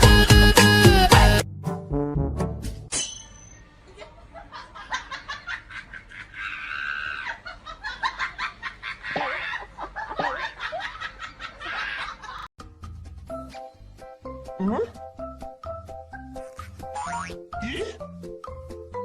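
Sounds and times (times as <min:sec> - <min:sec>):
laughter: 0:03.9 - 0:12.5.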